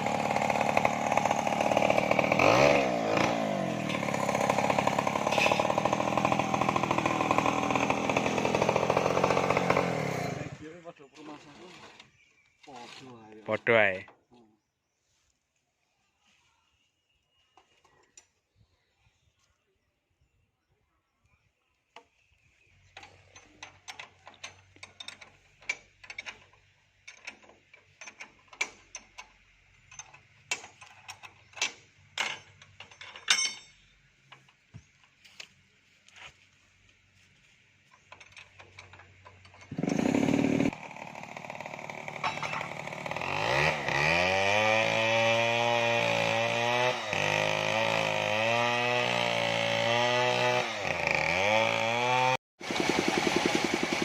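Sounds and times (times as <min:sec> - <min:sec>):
saw engine running: 0:00.0 - 0:10.6, 0:39.7 - 0:54.0.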